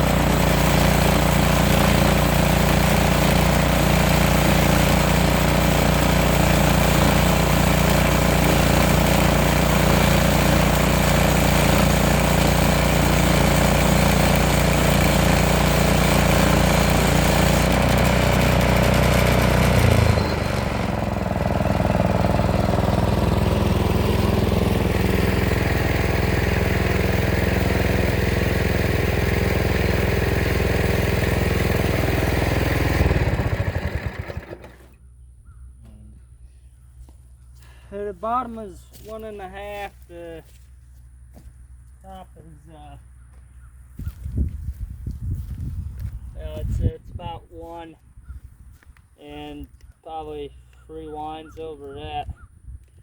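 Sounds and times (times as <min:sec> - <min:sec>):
sawmill engine running: 0:00.0 - 0:35.0.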